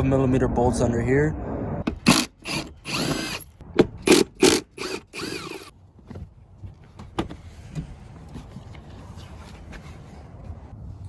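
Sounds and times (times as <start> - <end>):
tool rasping on bolts: 1.9 - 3.4, 4.0 - 5.7.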